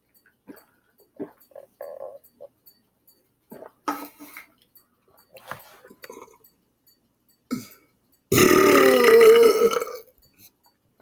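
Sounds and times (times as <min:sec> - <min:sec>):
man making throat noises: 0:07.5 - 0:10.1
loud belch: 0:08.3 - 0:10.1.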